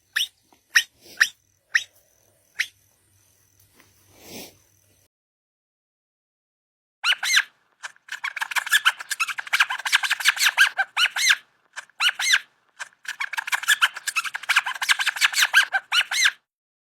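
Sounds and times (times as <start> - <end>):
mouse squeaking: 0.0 - 2.0, 2.6 - 2.8, 7.0 - 16.4.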